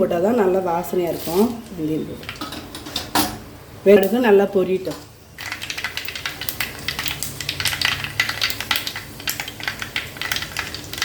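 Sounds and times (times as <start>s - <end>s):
seeds spluttering in hot oil: 4.0s - 11.0s.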